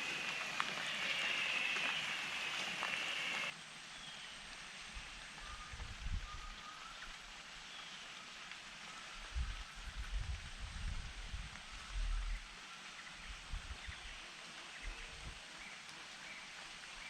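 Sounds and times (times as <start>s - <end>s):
loud hiss: 0.0s - 3.5s
rain and water hiss: 0.0s - 17.0s.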